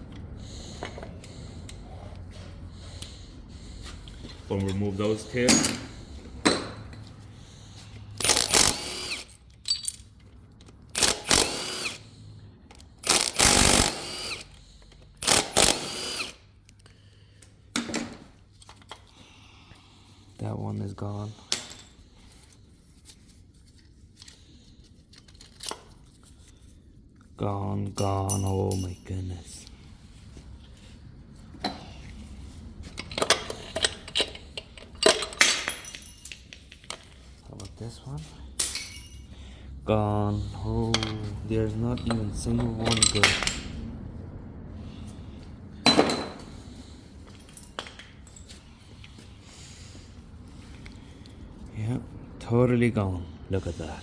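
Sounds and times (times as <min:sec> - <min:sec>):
metal parts and tools clinking: 0:04.2 - 0:07.2, 0:08.1 - 0:12.0, 0:12.7 - 0:16.9, 0:21.4 - 0:22.1, 0:25.1 - 0:26.4, 0:27.8 - 0:29.7, 0:32.8 - 0:39.4, 0:40.8 - 0:43.8, 0:45.8 - 0:49.2
power tool motor whining: 0:08.2 - 0:09.4, 0:11.0 - 0:12.1, 0:12.9 - 0:14.6, 0:15.2 - 0:16.4.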